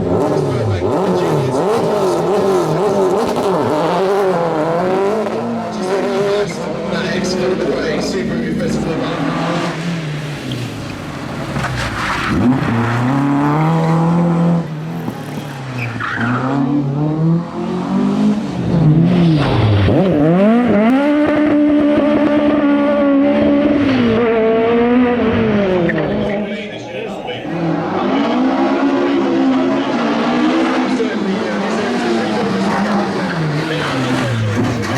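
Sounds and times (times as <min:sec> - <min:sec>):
rally car engine revving: 0:00.0 - 0:34.9.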